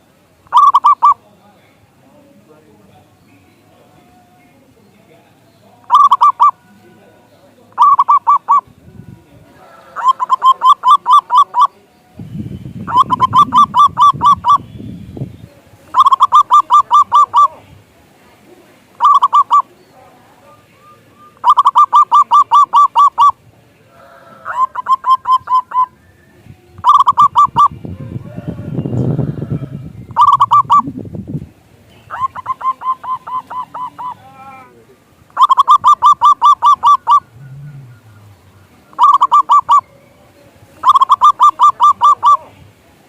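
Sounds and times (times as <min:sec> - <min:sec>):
dove cooing song: 0:00.0 - 0:01.2, 0:05.8 - 0:06.9, 0:07.7 - 0:17.8, 0:18.4 - 0:31.0, 0:32.0 - 0:42.7
low rumble: 0:37.2 - 0:38.8.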